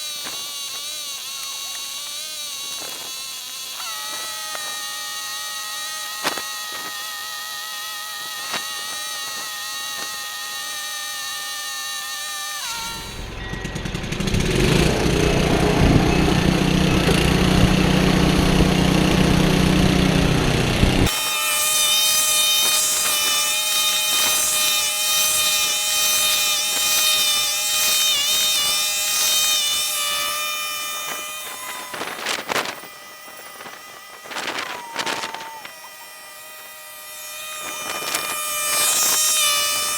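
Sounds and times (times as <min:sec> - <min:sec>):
snowblower engine running: 0:12.7 - 0:21.2
loud low noise: 0:13.2 - 0:21.1.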